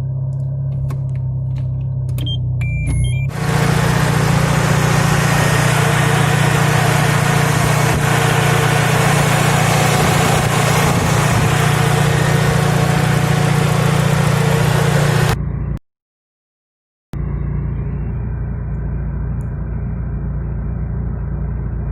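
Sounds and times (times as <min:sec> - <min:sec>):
car engine idling: 0:00.0 - 0:02.6, 0:03.2 - 0:15.5, 0:17.2 - 0:21.9.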